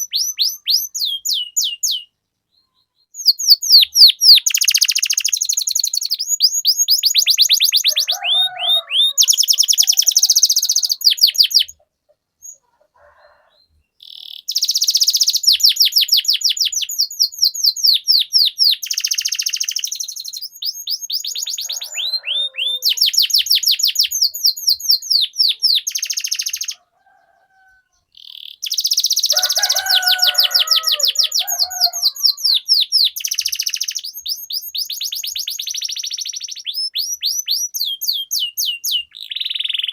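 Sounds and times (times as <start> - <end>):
canary singing trills: 0.0 - 39.9.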